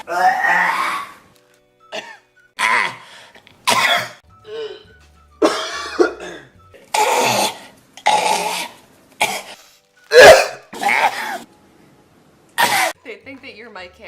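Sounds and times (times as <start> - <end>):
men coughing: 1.9 - 3.0, 3.7 - 4.2, 5.4 - 8.4, 9.2 - 11.4, 12.6 - 13.0.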